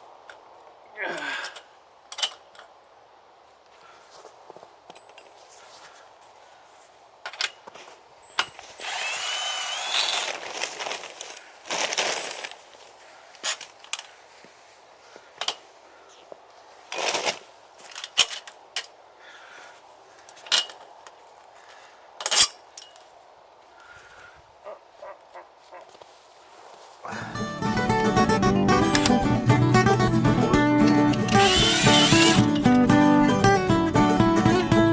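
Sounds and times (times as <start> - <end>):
metal clinks of bolts and tools: 1.4 - 2.7, 4.9 - 5.4, 7.2 - 8.6, 20.3 - 20.8, 22.2 - 23.1, 28.9 - 29.2, 30.8 - 32.8
cordless power tool whining: 8.7 - 10.4, 28.8 - 29.2, 30.3 - 32.8.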